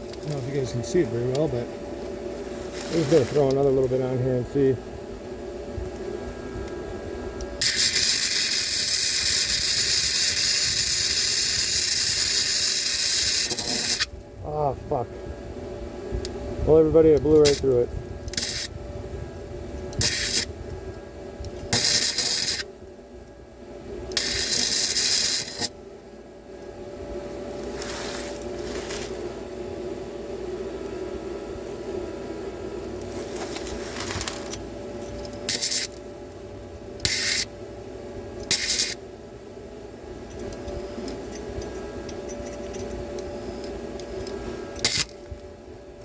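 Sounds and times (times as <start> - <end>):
steady machine hum: 0.0 - 46.0
welding arc crackling: 7.5 - 14.2, 17.4 - 18.7, 20.0 - 20.5, 21.7 - 22.7, 24.2 - 25.7, 35.4 - 36.0, 38.5 - 39.0.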